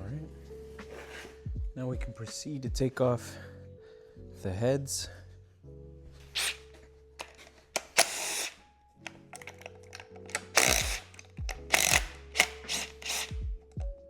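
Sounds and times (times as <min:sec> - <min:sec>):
music with deep bass thump beat: 0:00.8 - 0:02.8, 0:10.6 - 0:14.0.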